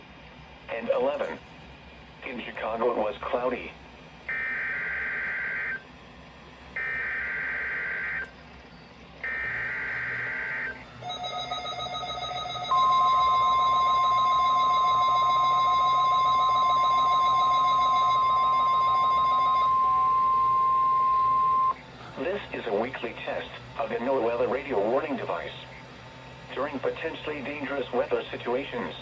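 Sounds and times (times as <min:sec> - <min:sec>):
steady warning alarm tone: 0:04.3 - 0:05.8, 0:06.8 - 0:08.3, 0:09.2 - 0:29.0.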